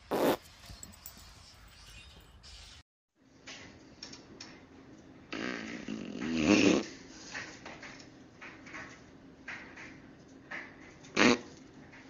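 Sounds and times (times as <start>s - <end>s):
long buzzy fart: 0.0s - 0.4s, 5.3s - 7.0s, 11.2s - 11.5s.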